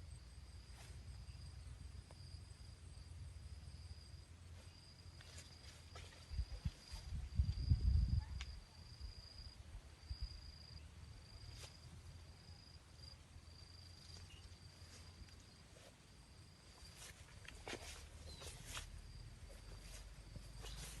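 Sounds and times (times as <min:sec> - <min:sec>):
low rumble on microphone: 0:05.6 - 0:08.5.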